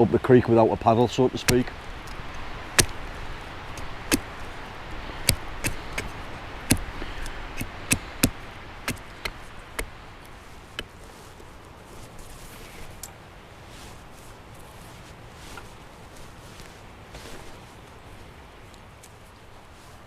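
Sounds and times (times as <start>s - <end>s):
faint background hiss: 0.0s - 20.0s
sharp knocks and clicks: 1.4s - 9.9s.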